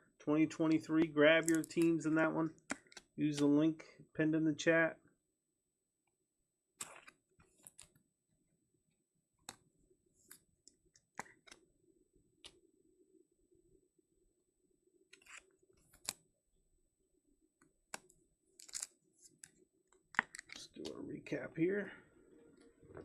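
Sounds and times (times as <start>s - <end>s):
trading cards clicking and scraping: 0.8s - 3.5s, 6.8s - 8.0s, 15.1s - 16.2s, 17.9s - 20.9s.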